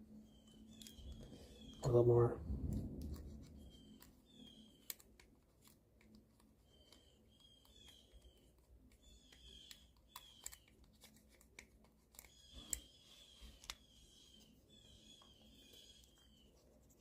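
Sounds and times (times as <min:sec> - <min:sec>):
small clicks: 0:02.8 - 0:13.8.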